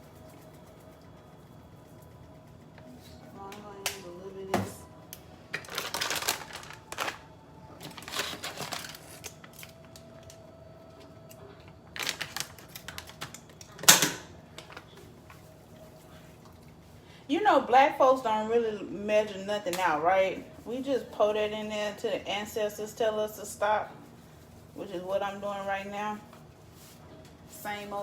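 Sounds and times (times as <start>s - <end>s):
seasoning shaken out rustling: 22.4s - 28.0s.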